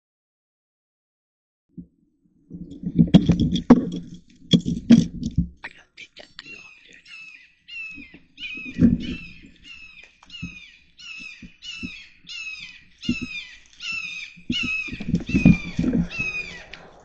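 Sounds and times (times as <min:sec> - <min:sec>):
handling knocks and rustles: 0:02.5 - 0:05.6
cranes calling: 0:06.4 - 0:17.0.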